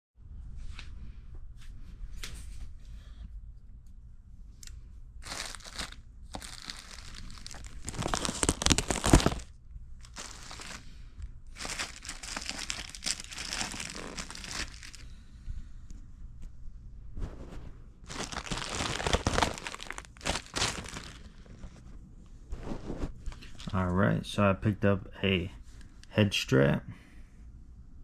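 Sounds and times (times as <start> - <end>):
packaging crinkling and ripping: 5.2 - 10.9, 11.5 - 15.1, 18.0 - 21.8.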